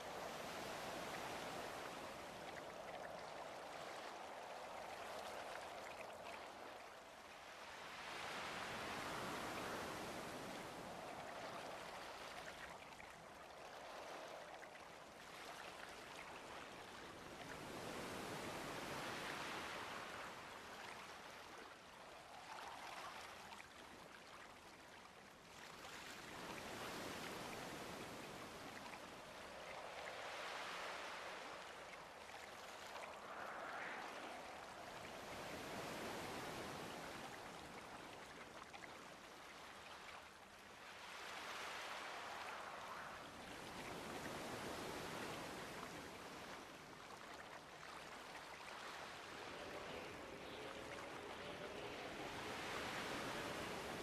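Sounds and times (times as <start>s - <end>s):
faint rushing water noise: 0.0s - 54.0s.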